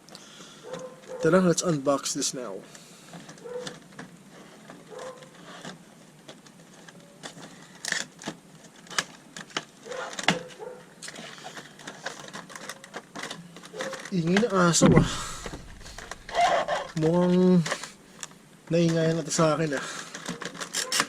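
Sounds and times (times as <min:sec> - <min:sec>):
dog barking: 0:00.6 - 0:01.3, 0:03.4 - 0:03.7, 0:04.9 - 0:05.3, 0:09.8 - 0:10.9
cardboard box and plastic packaging opening: 0:11.1 - 0:17.9, 0:20.0 - 0:21.0.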